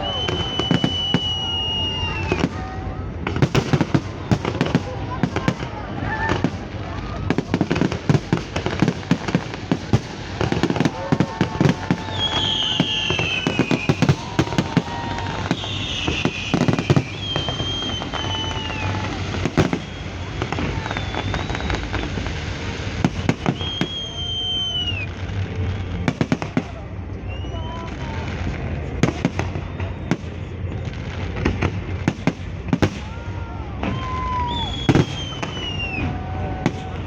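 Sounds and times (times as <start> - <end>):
high falling whistles: 0.0 - 2.4, 12.0 - 18.9, 19.6 - 22.2, 23.4 - 25.1, 33.9 - 36.1
crowd voices: 0.0 - 37.0
fireworks bangs and crackles: 0.0 - 37.0.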